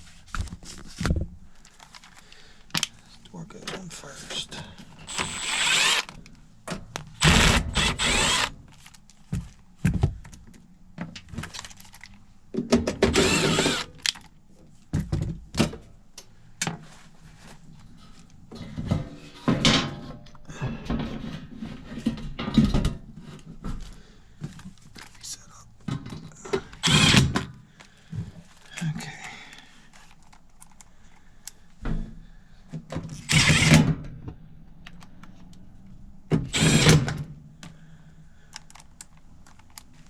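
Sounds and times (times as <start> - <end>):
cordless drill whining: 5.1 - 6.2, 7.2 - 8.6, 13.1 - 14.0, 26.8 - 27.4, 33.2 - 33.9, 36.5 - 37.1
tool clicks: 5.1 - 6.3, 7.0 - 8.5, 26.8 - 27.4.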